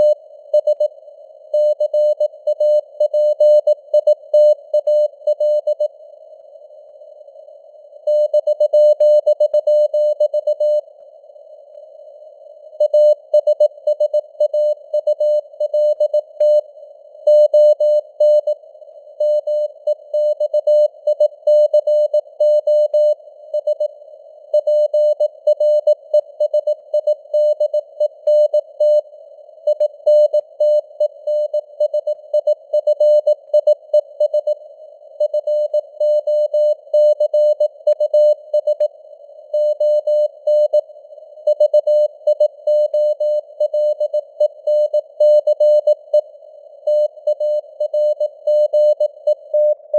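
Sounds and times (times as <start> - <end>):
morse code tone: 46.9 - 49.9.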